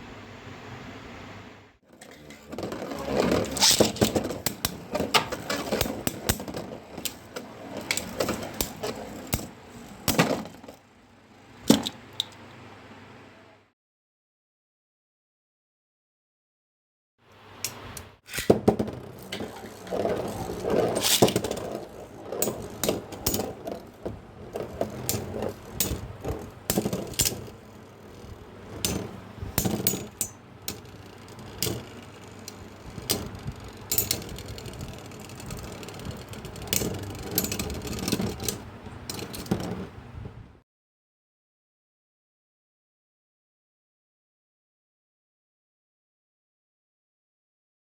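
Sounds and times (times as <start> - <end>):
spinning tops whirring and clashing: 2.0 - 10.8, 17.6 - 39.6
sharp clicks and rattles: 19.1 - 39.7.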